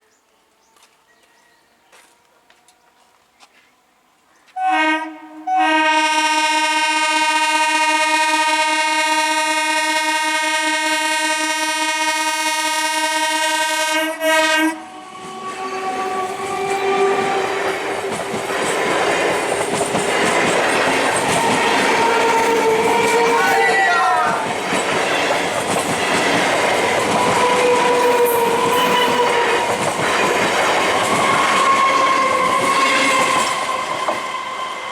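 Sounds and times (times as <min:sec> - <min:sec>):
train horn blasts: 0:04.6 - 0:17.8, 0:21.2 - 0:23.9, 0:27.1 - 0:30.4
train rumble and wheel clatter: 0:14.7 - 0:34.9.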